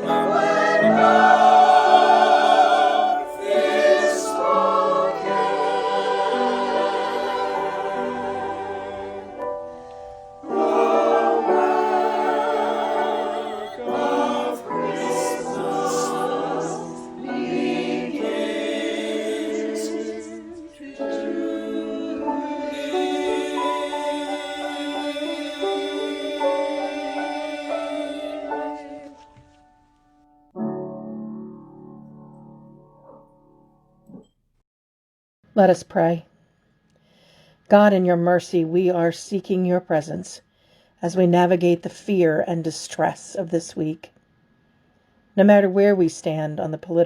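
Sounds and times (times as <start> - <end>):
choir singing a hymn: 0.0 - 29.6.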